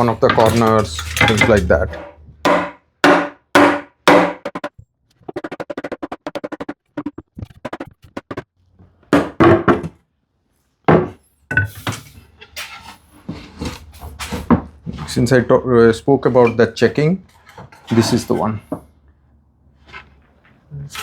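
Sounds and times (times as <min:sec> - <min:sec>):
hard wooden knocks: 0:00.3 - 0:08.4.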